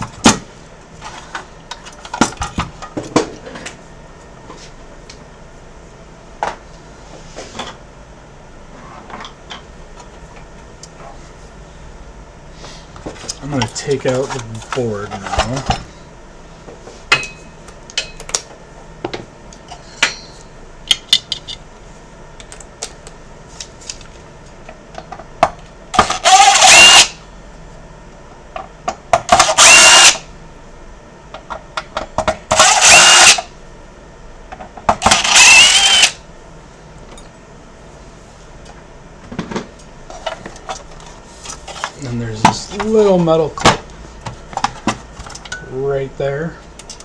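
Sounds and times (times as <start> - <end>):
electric screwdriver whining: 26.0 - 27.2, 29.3 - 30.3, 32.5 - 33.5, 35.0 - 36.2.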